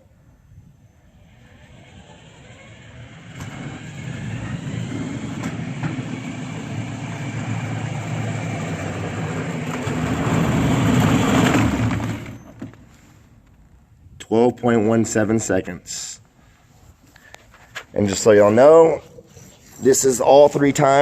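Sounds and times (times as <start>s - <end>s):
electric drive motors running: 0.8s - 12.8s
wheels rolling over ground: 1.2s - 13.6s.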